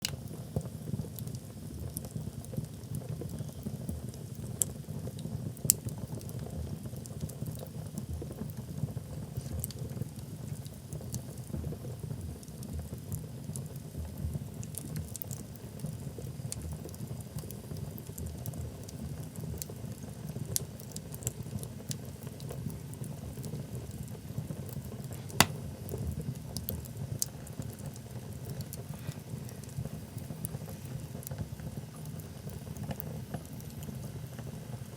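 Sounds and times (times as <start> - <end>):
wood fire burning: 19.6 - 34.9
logs crackling and popping: 25.2 - 25.6.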